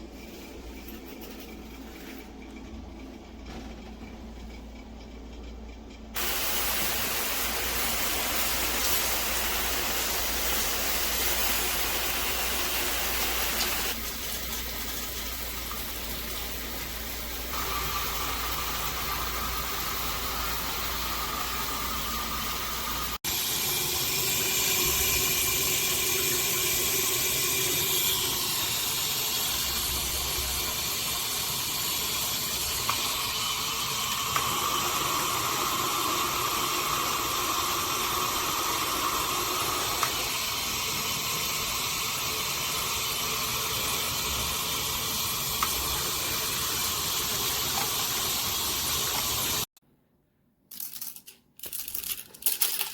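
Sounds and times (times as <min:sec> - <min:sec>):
shower head spraying water: 0:06.2 - 0:49.7.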